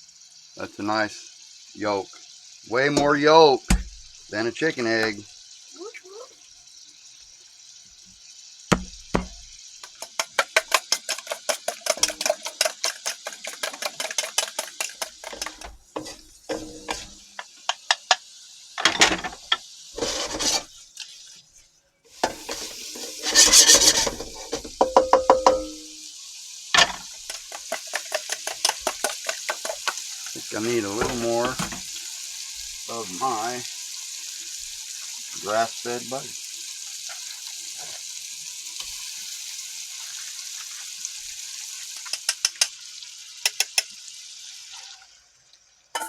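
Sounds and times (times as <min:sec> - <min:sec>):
sizzle from hot wok: 0:00.0 - 0:46.0
fork beating eggs in a bowl: 0:09.8 - 0:17.1, 0:27.2 - 0:30.0.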